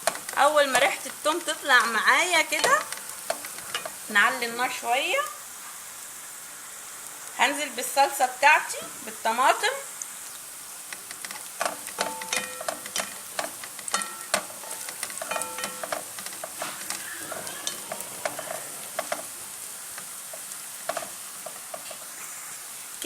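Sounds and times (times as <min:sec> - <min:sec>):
spoon scraping and knocking pan: 0:00.0 - 0:04.2, 0:10.9 - 0:22.2
food sizzling in a pan: 0:00.0 - 0:23.0.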